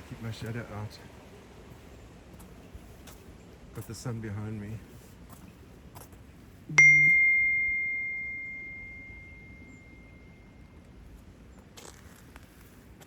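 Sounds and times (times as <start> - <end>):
bright ringing ding: 6.8 - 10.6.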